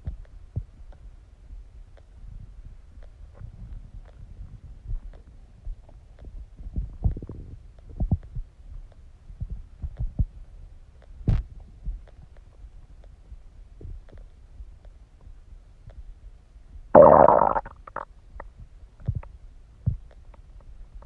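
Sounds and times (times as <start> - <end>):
stomach gurgling: 17.0 - 18.1.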